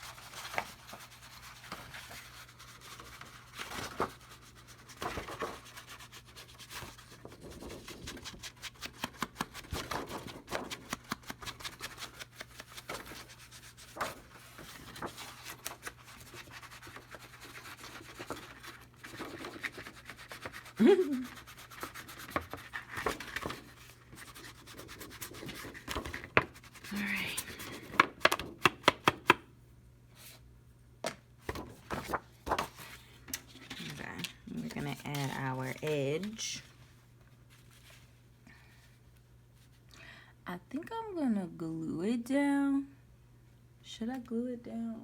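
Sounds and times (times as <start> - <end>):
hand rubbing paper: 0.0 - 27.5.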